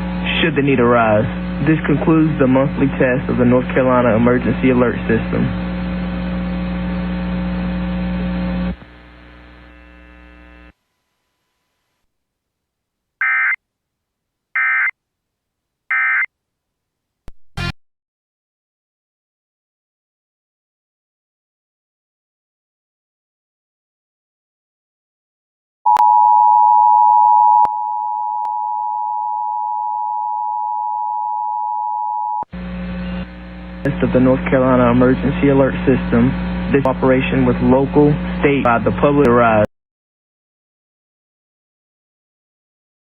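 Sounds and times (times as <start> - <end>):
faint hum: 0.0 - 11.5, 25.9 - 39.7.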